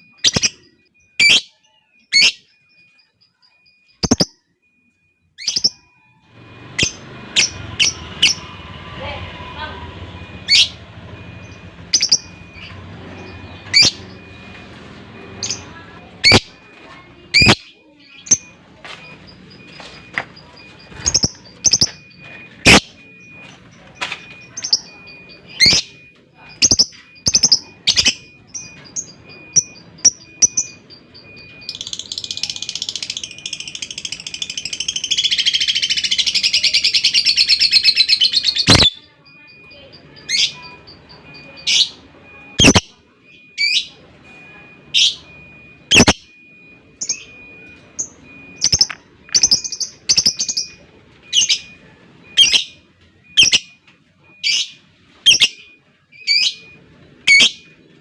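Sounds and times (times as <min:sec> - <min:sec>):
lovebird chattering trill: 0:04.0 - 0:04.3, 0:17.3 - 0:17.7, 0:45.9 - 0:46.1.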